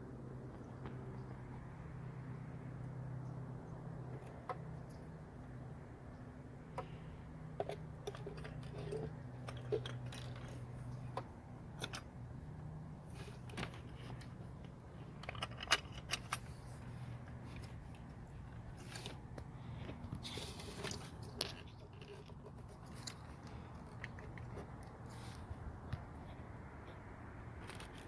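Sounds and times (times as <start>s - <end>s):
metal tools clinking and rattling: 7.5s - 12.2s, 13.1s - 19.2s.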